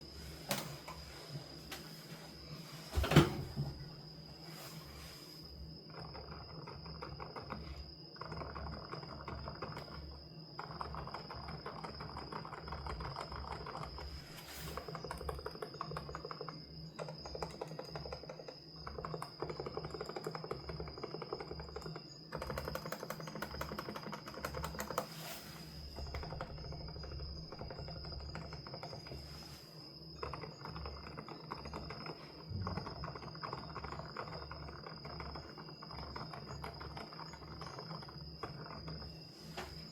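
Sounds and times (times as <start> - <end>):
mechanical keyboard typing: 8.2 - 10.0, 10.6 - 14.0, 14.8 - 25.1, 30.2 - 39.1.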